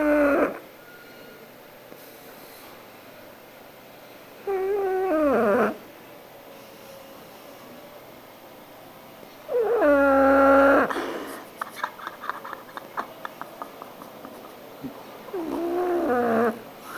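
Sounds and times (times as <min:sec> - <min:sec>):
dog snoring: 0:00.0 - 0:00.6, 0:04.4 - 0:05.8, 0:09.5 - 0:11.1, 0:15.3 - 0:16.9.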